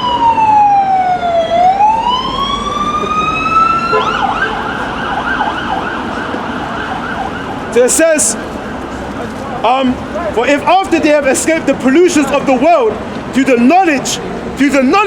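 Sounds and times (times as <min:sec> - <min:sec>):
siren wailing and yelping: 0:00.0 - 0:07.8.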